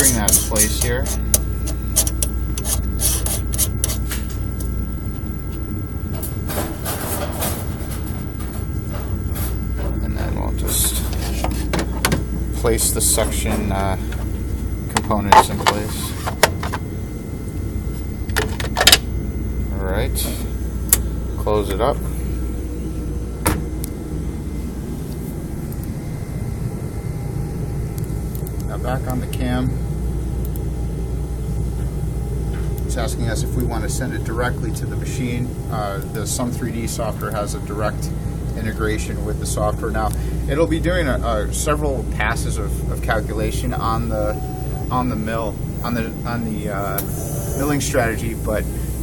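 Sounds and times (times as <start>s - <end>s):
scraping rub: 0.0s - 4.4s, 10.8s - 11.8s
low hum: 0.0s - 49.0s
machine cover shutting click: 15.0s - 16.8s.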